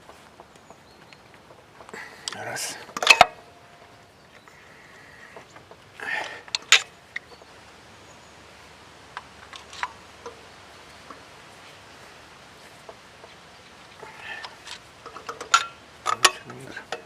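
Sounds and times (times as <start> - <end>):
hand tools clicking and knocking: 1.2 - 4.6, 5.2 - 7.4, 14.0 - 17.0.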